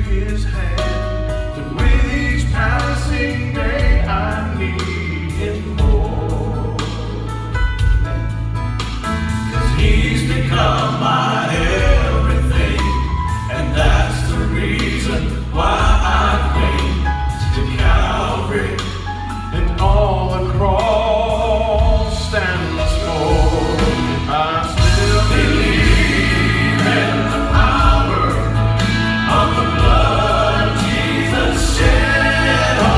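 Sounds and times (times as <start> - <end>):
vocal quartet singing a hymn: 0.0 - 8.3, 9.3 - 32.9
low accompaniment: 19.4 - 32.9.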